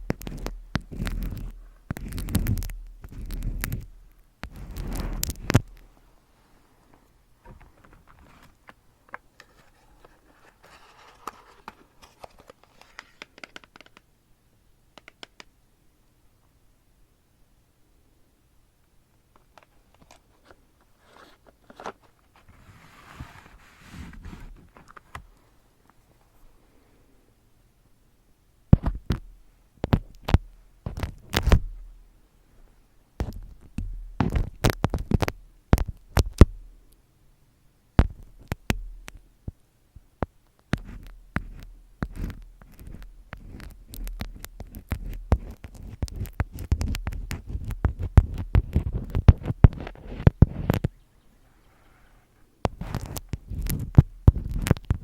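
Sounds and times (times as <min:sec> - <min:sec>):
soft rustle: 0:00.0 - 0:13.5, 0:19.6 - 0:27.2
sharp taps and clicks: 0:15.0 - 0:15.5.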